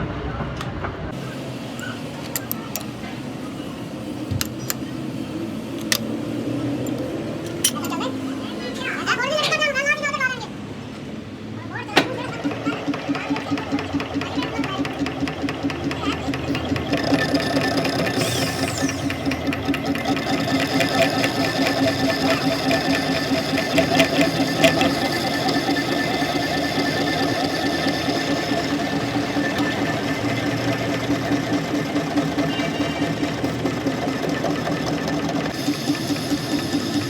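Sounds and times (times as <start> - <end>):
machine running with fast pulse: 12.0 - 37.0.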